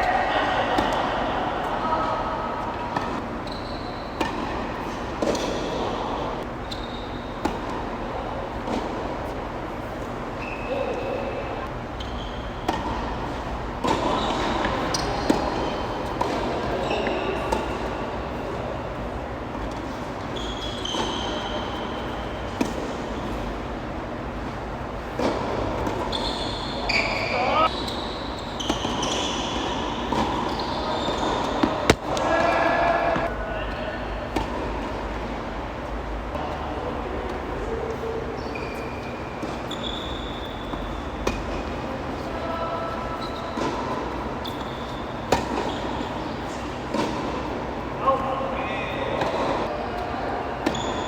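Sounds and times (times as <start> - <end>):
background noise: 0.0 - 51.0
shoe squeaks: 3.2 - 5.6, 6.5 - 7.5, 10.3 - 12.8, 13.8 - 17.5, 20.3 - 22.5, 25.8 - 33.3, 38.0 - 41.4, 42.5 - 47.0, 50.6 - 51.0
tennis balls struck by racquets: 28.6 - 33.4.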